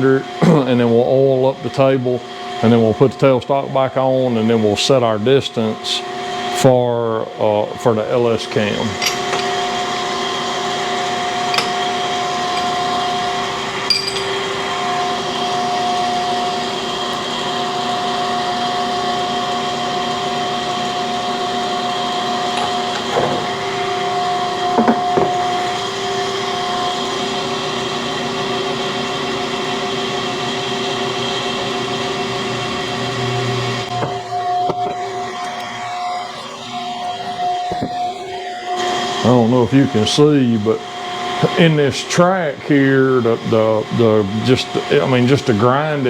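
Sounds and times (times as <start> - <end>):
shop machinery humming: 0.0 - 46.0
metallic tool clicks and knocks: 13.9 - 14.3.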